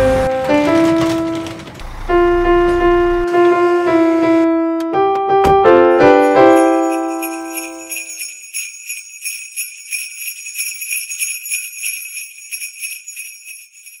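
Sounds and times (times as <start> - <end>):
low keyboard chord: 0.0 - 7.9
jingle bells shaken: 6.0 - 14.0.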